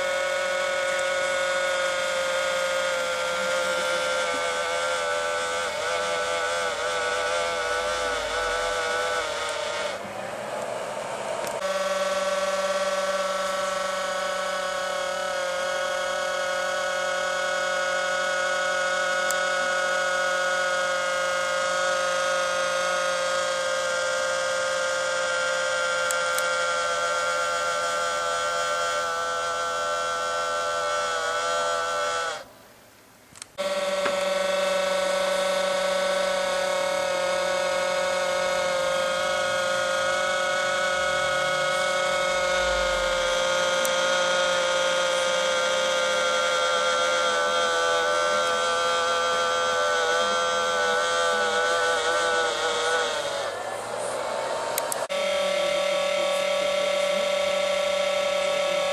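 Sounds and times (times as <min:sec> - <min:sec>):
high-pitched mechanical whine: 0:00.0 - 0:58.9.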